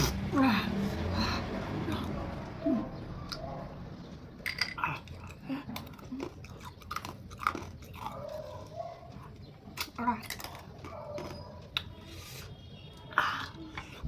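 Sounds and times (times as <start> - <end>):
person chewing and crunching: 4.4 - 14.0.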